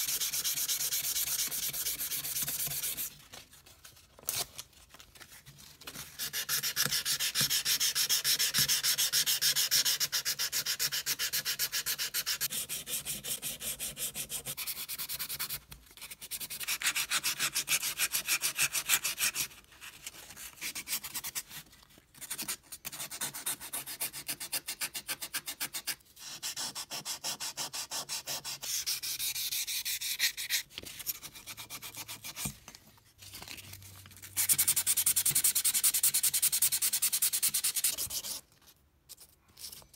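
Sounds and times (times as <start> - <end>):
hand sanding metal: 0.0 - 3.1.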